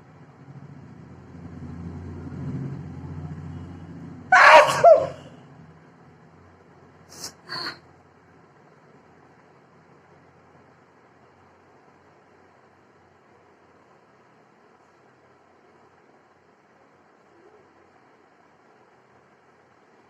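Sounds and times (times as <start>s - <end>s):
woman sneezing: 7.1s - 7.8s.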